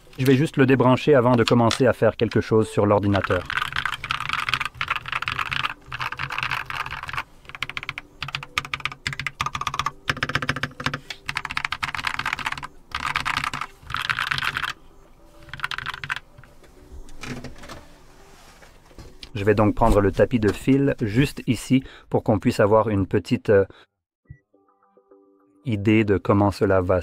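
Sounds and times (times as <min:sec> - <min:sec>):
mechanical keyboard key clacks: 0:15.4 - 0:16.2.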